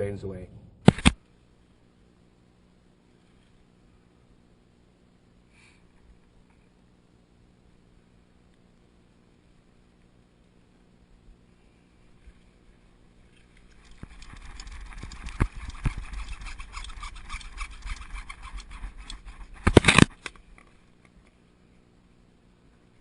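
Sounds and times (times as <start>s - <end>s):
saw rasping through plastic pipe: 13.8s - 20.2s.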